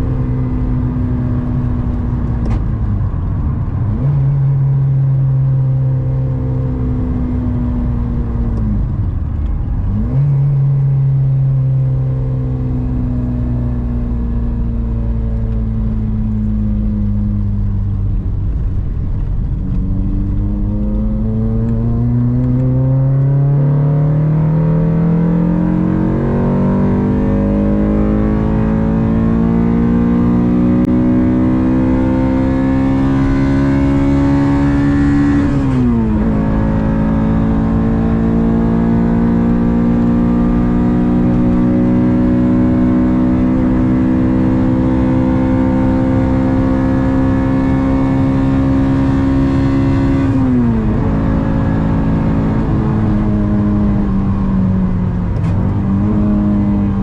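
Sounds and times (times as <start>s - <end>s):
car engine accelerating: 0.0s - 57.0s.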